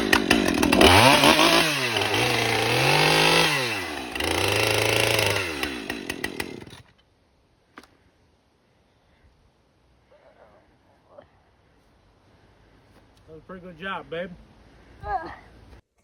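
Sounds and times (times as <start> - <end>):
chainsaw cutting: 0.0 - 7.0.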